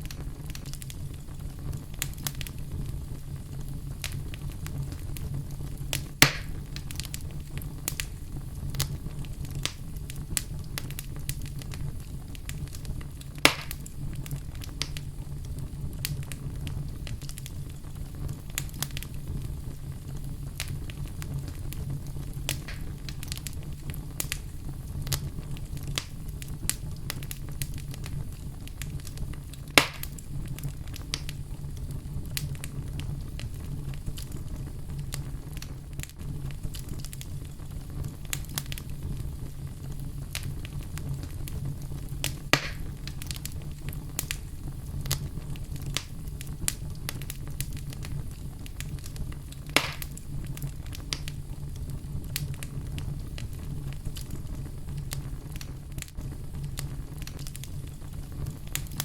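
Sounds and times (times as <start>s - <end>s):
fire crackling in a fireplace: 0.0s - 59.0s
sharp loud pops of fire: 4.0s - 15.0s, 20.6s - 28.2s, 28.8s - 31.4s, 40.3s - 51.4s.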